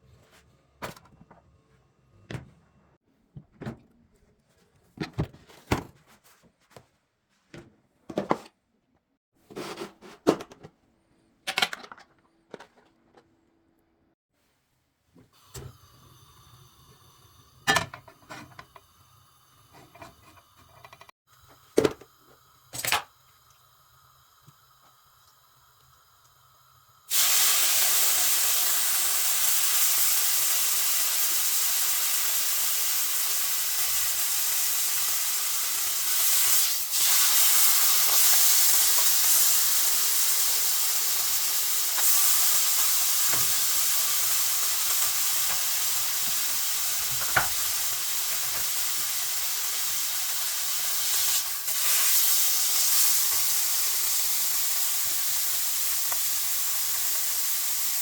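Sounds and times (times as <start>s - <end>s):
steak sizzling in a hot pan: 27.1s - 58.0s.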